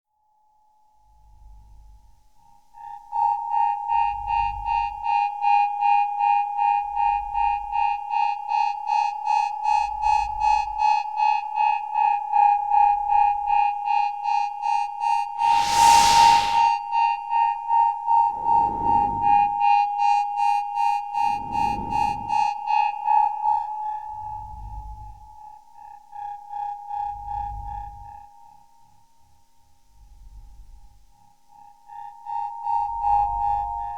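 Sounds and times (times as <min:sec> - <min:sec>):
loud burst of hiss: 0:15.4 - 0:16.8
swooshes: 0:15.4 - 0:16.8.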